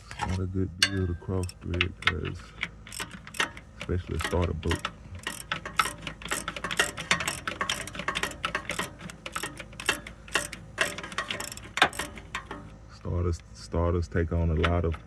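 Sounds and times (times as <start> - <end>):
ratchet wrench clicking: 0.8 - 12.8.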